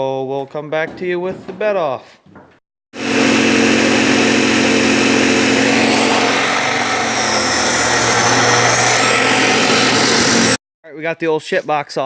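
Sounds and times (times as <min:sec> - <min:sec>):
motor running loudly: 0:03.0 - 0:10.6.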